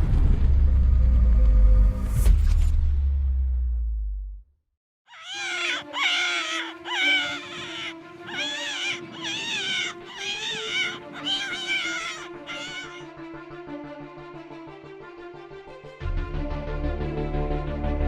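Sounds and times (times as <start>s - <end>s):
animal wavering cries: 5.1s - 13.1s.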